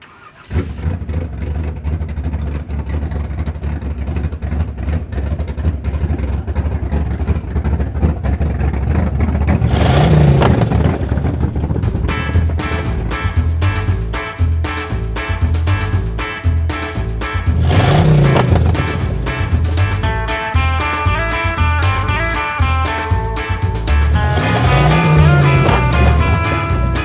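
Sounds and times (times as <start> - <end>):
car revving: 0.0 - 14.2, 14.8 - 22.5, 23.1 - 27.0
car engines rumbling: 0.0 - 27.0.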